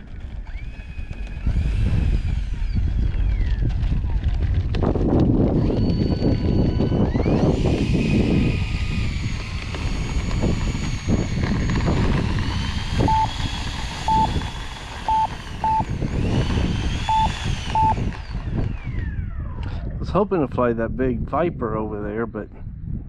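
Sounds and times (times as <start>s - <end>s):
wind buffeting microphone: 0.0s - 23.0s
faint high whine: 12.5s - 19.6s
short electronic beeps: 13.0s - 13.3s, 14.1s - 14.3s, 15.1s - 15.9s, 17.1s - 18.0s.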